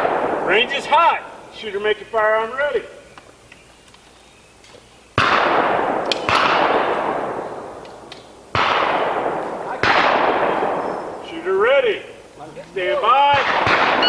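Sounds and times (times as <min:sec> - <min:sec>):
gunshots with echo: 0:00.0 - 0:01.6, 0:05.2 - 0:12.1, 0:13.2 - 0:14.0.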